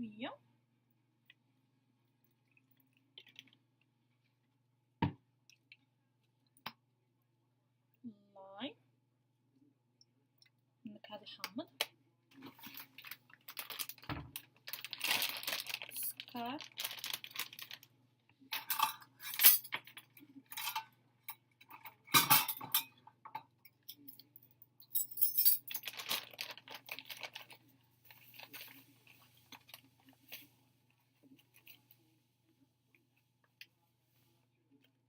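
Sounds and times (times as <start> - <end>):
utensils and glass clinking: 18.6 - 20.9, 21.7 - 23.0.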